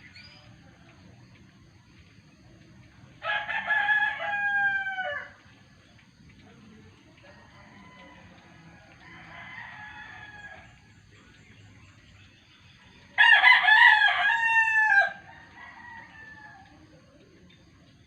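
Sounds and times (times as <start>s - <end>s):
roosters crowing: 3.2s - 5.4s, 7.5s - 10.8s, 13.2s - 16.8s.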